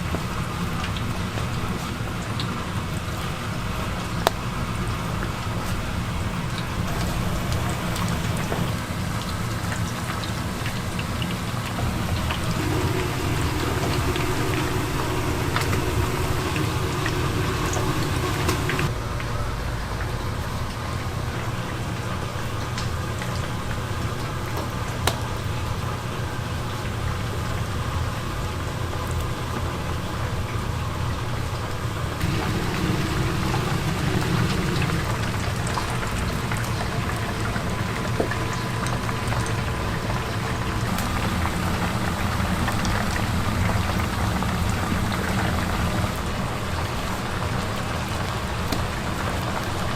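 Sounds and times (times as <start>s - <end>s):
chicken sizzling in hot oil: 0.0s - 18.9s, 32.1s - 49.9s
low hum: 11.7s - 18.9s, 32.2s - 36.9s.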